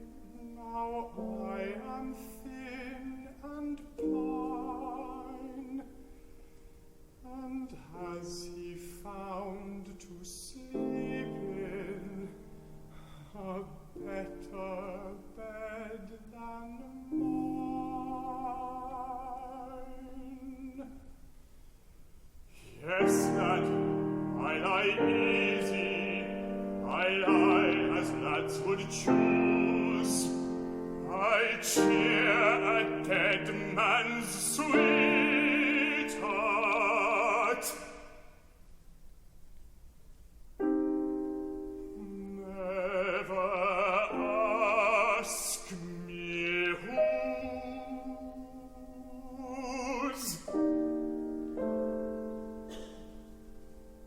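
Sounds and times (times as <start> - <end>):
baritone singing: 0.0 - 6.1, 7.2 - 21.1, 22.5 - 38.3, 40.8 - 53.7
piano accompaniment: 0.0 - 20.5, 22.7 - 37.9, 40.6 - 54.0.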